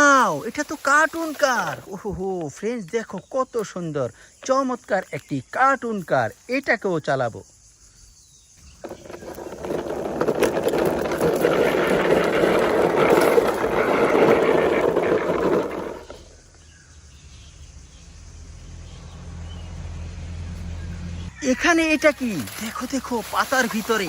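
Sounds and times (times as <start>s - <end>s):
toy car wheels rolling: 8.6s - 16.4s.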